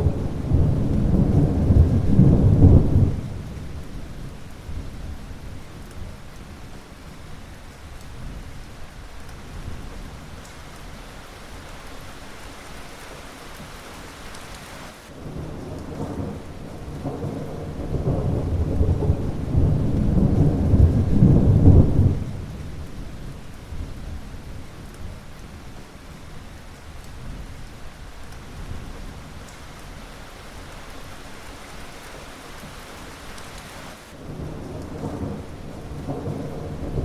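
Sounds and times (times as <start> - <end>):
rolling thunder rumble: 0.0 - 7.4, 15.1 - 26.5, 34.1 - 37.0
steady rain: 0.0 - 37.0.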